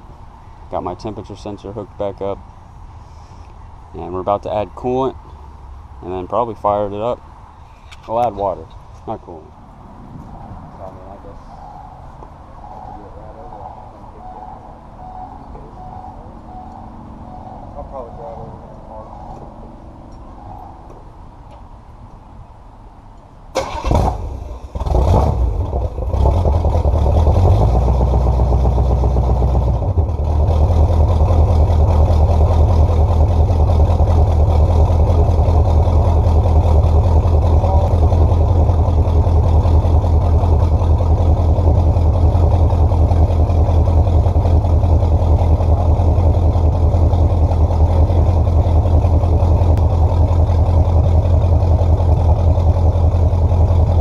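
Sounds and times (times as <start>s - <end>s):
v eight engine running: 8.3s - 21.1s, 23.6s - 54.0s
engine cranking: 23.6s - 28.2s.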